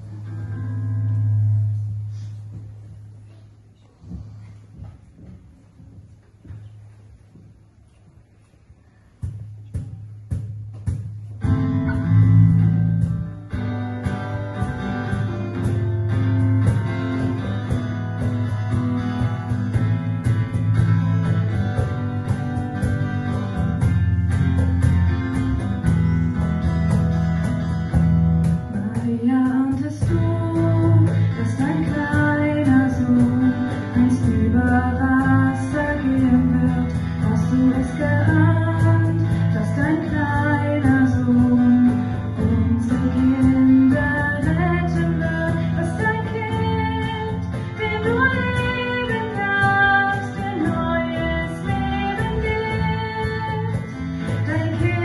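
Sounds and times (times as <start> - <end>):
guitar and bass: 0.0 - 3.4, 9.8 - 55.0
woman singing: 28.7 - 55.0.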